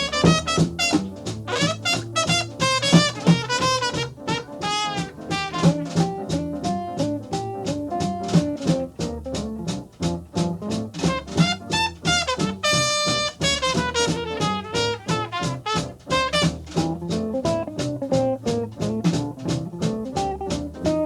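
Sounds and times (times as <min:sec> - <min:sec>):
swing jazz band playing: 0:00.0 - 0:21.0.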